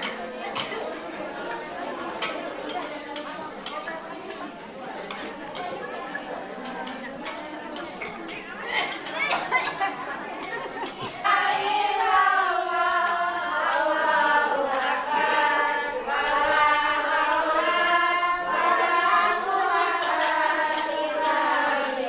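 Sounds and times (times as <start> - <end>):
group singing in unison: 10.5 - 22.0.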